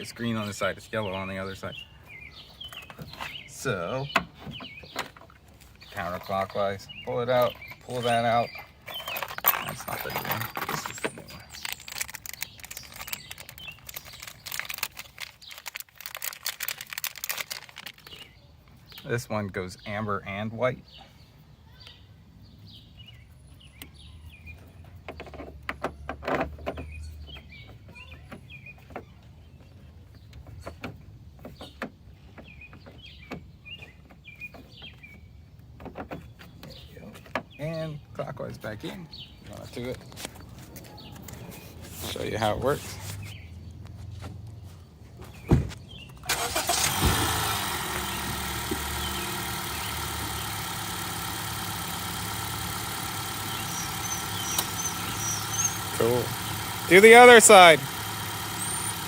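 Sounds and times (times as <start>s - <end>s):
birds chirping: 0.0s - 59.0s
car engine starting and idling: 46.2s - 59.0s.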